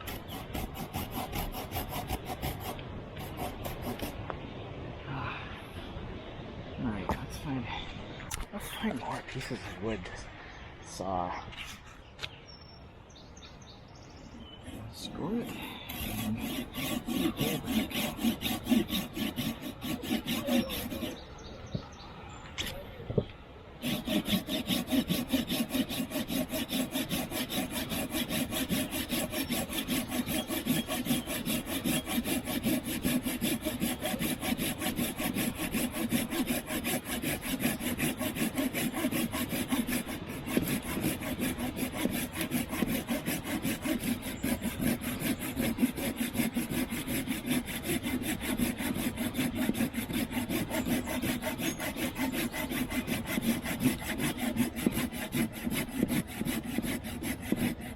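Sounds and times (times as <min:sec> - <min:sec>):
hand saw cutting wood: 0:00.0 - 0:04.2, 0:14.9 - 0:21.3, 0:23.8 - 0:57.9.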